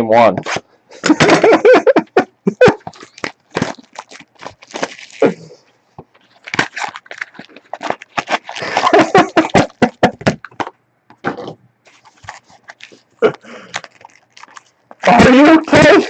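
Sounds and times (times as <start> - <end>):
people laughing hard: 1.0 - 3.0, 8.6 - 10.2.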